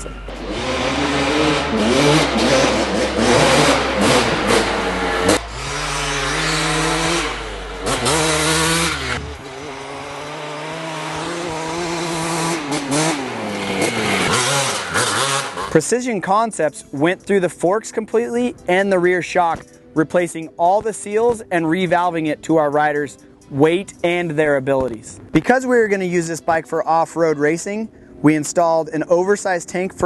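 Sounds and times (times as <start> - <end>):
dirt bike engine revving: 0.0 - 16.0.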